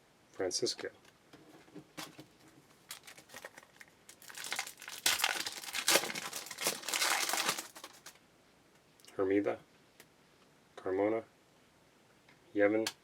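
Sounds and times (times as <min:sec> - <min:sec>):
foil wrapper tearing and crinkling: 0:02.9 - 0:08.2.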